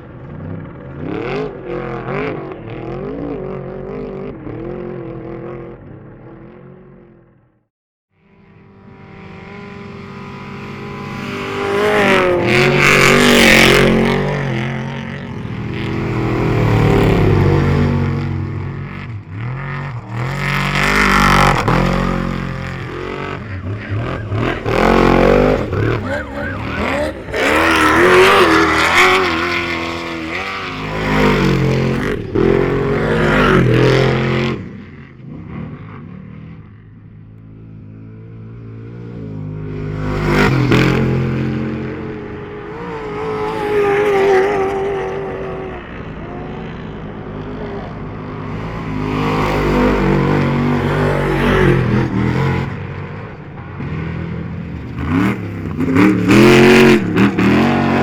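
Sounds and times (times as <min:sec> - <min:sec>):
race vehicle engines revving past: 0:08.2 - 0:36.9, 0:37.6 - 0:58.0.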